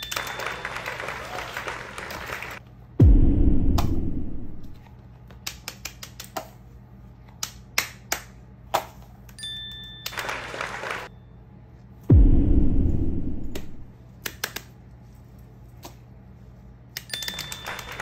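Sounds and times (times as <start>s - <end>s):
deep falling boom: 3.0s - 4.7s, 12.1s - 13.9s.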